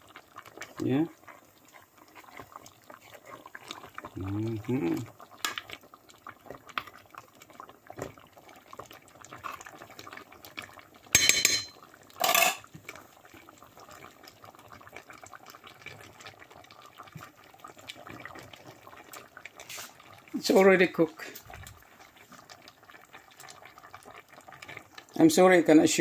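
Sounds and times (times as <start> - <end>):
spoon stirring and scraping pot: 0.5 - 4.2, 11.1 - 13.0, 19.6 - 20.6
spoon clanking on pot: 11.1 - 12.7.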